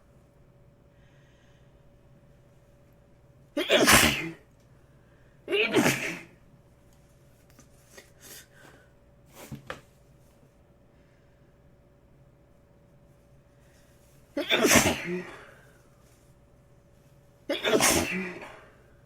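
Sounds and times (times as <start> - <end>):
person sneezing: 3.6 - 4.5, 5.5 - 6.4, 14.4 - 15.7, 17.5 - 18.8.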